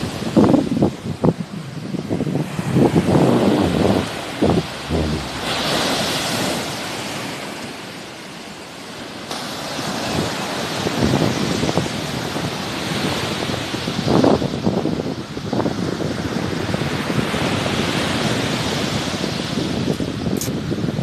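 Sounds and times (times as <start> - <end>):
wind rumbling on microphone: 0.0 - 7.2, 10.1 - 21.0
sea waves surf: 0.0 - 14.0.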